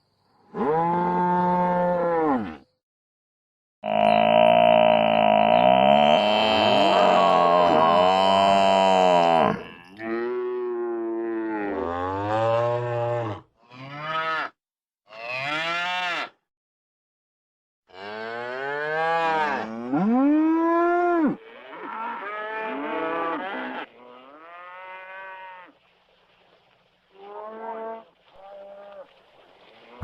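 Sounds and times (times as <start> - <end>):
buffalo lowing: 3.8 - 9.7.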